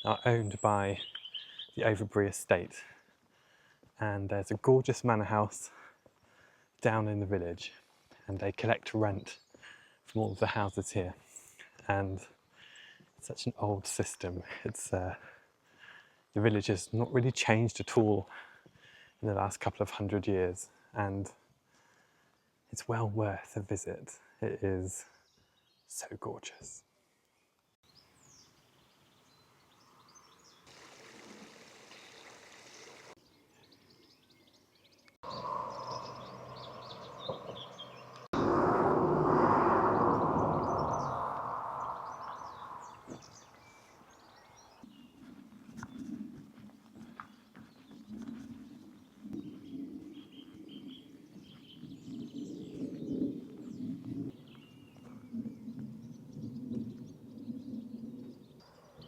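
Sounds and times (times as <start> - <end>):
songbirds chirping and singing: 0.0 - 7.7, 8.4 - 11.1, 27.4 - 38.5, 39.5 - 59.0
faint outdoor background noise: 0.0 - 59.0
steady low hum: 35.3 - 43.1
low outdoor rumble: 36.2 - 43.2.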